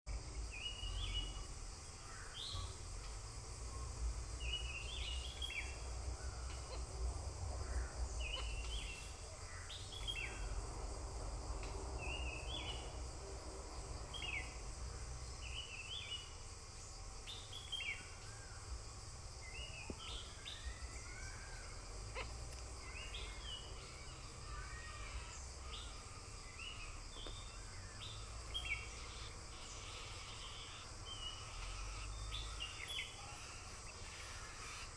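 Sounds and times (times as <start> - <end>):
small birds chirping: 0.1 - 34.9
steady low rumble: 1.2 - 15.6.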